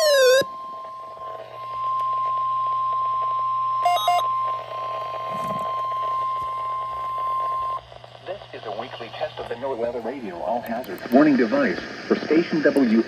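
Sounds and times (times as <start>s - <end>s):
steady high alarm tone: 0.0s - 7.8s
low radio hum: 0.0s - 13.0s.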